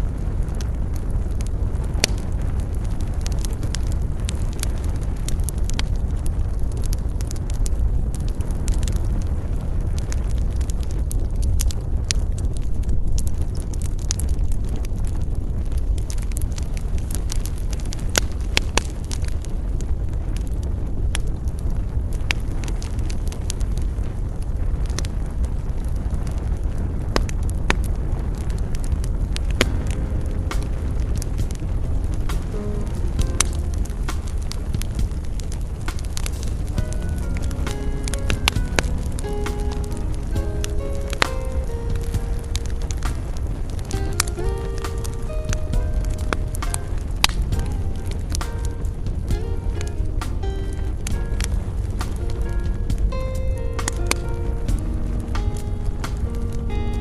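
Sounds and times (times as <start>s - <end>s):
low rumble of fire: 0.0s - 57.0s
wood fire crackling and popping: 0.0s - 57.0s
music: 1.0s - 6.2s, 29.5s - 57.0s.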